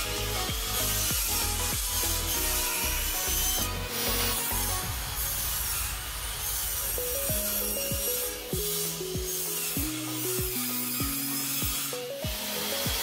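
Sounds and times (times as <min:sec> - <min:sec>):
hand tool rasping wood: 0:00.0 - 0:13.0
plucked melody music: 0:07.0 - 0:13.0.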